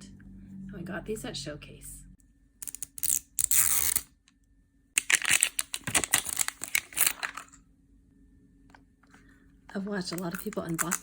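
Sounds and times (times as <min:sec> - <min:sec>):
packaging tearing: 0:02.6 - 0:04.1, 0:05.0 - 0:07.6
crinkling plastic: 0:05.0 - 0:07.6, 0:09.7 - 0:11.0.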